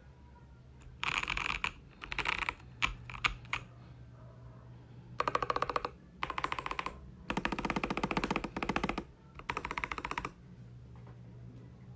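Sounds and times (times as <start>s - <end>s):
rapid mechanical keyboard keystrokes: 0.8s - 3.7s, 5.2s - 10.4s.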